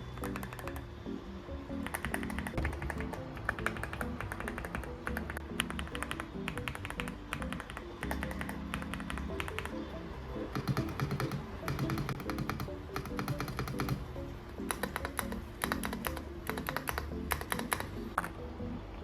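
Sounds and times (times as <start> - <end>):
background music: 0.0 - 19.0
mechanical keyboard key clicks: 10.6 - 14.0, 14.7 - 18.3.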